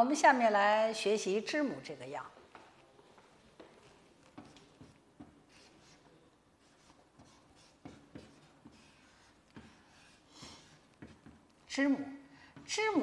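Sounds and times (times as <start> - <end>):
scratchy writing on a board: 3.6 - 11.6.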